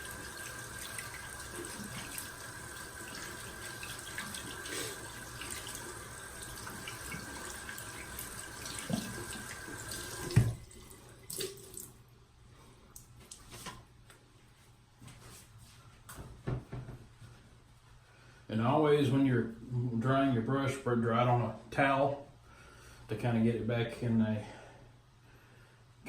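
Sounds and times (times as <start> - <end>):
sink faucet running: 0.0 - 11.9
faucet shut off knock: 10.0 - 10.6.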